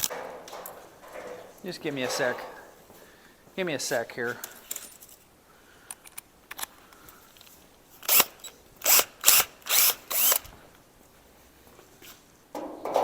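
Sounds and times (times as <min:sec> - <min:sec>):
power drill bursts: 0:08.0 - 0:10.5.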